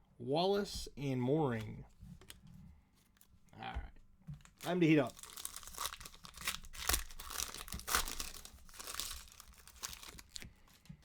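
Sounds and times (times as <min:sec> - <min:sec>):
card pack wrappers tearing: 0:04.4 - 0:10.9.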